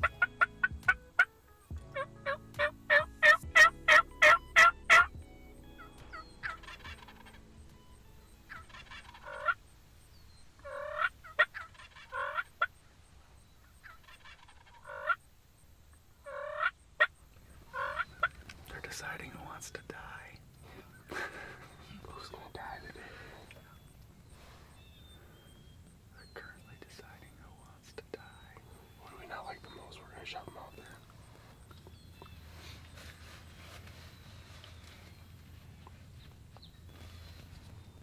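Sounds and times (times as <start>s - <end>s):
turkey gobbles: 2.0s - 5.1s, 8.5s - 9.6s, 10.6s - 12.7s, 13.8s - 15.2s, 16.2s - 18.6s
turkey yelps: 2.0s - 5.1s, 5.8s - 7.4s, 8.5s - 9.6s, 10.6s - 12.7s, 13.8s - 15.2s, 16.2s - 18.4s.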